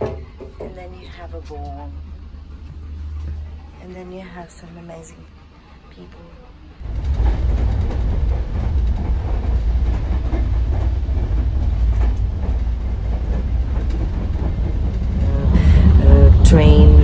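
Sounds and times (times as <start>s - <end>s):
train running on tracks: 0.0s - 17.0s.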